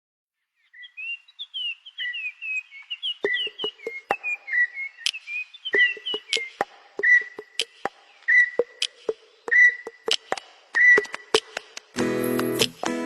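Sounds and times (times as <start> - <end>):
birds chirping: 0.4 - 11.9
sharp clicks or knocks: 5.8 - 8.0, 8.6 - 12.0.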